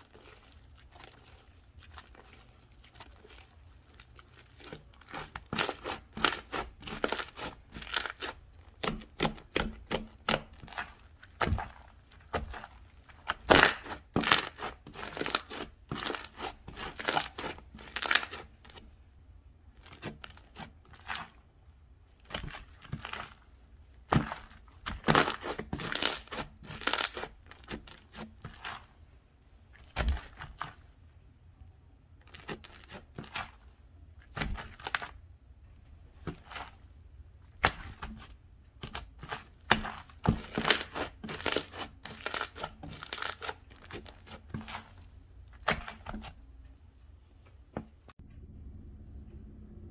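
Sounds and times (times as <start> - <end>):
slime squished by hand: 0.0 - 18.8, 22.2 - 28.9, 29.8 - 30.9, 36.2 - 46.4.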